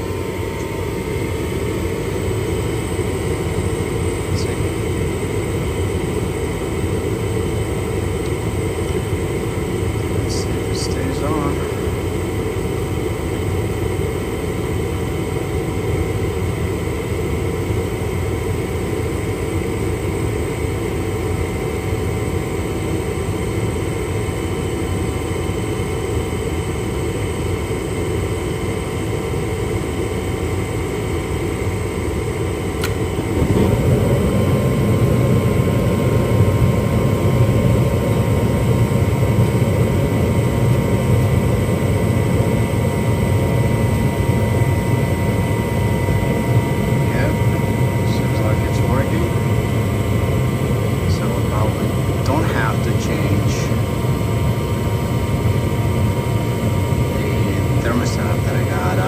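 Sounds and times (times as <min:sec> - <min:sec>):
furnace blower humming: 0:00.0 - 0:59.0
sharp click: 0:32.8 - 0:33.0.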